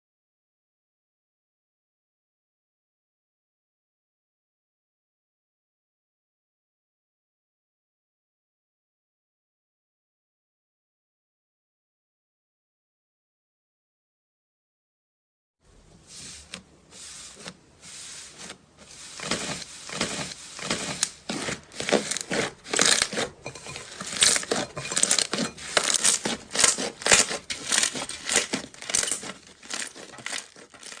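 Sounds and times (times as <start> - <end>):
crinkling and rustling: 15.9 - 31.0.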